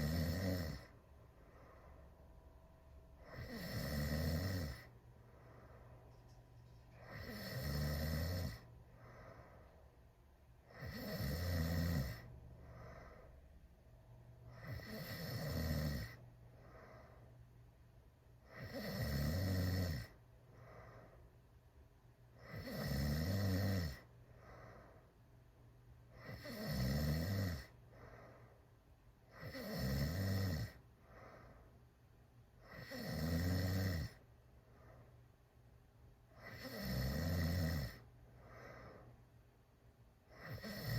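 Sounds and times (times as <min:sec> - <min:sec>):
person snoring loudly: 0:00.0 - 0:00.9, 0:03.3 - 0:04.9, 0:07.1 - 0:08.6, 0:10.7 - 0:12.2, 0:14.6 - 0:16.2, 0:18.5 - 0:20.1, 0:22.4 - 0:24.0, 0:26.2 - 0:27.7, 0:29.4 - 0:30.8, 0:32.7 - 0:34.2, 0:36.4 - 0:38.0, 0:40.4 - 0:40.9
faint breathing: 0:00.0 - 0:03.9, 0:04.6 - 0:11.0, 0:12.1 - 0:15.3, 0:16.0 - 0:17.7, 0:20.0 - 0:21.5, 0:23.9 - 0:25.4, 0:27.6 - 0:29.6, 0:30.6 - 0:32.0, 0:34.1 - 0:35.4, 0:37.9 - 0:39.5.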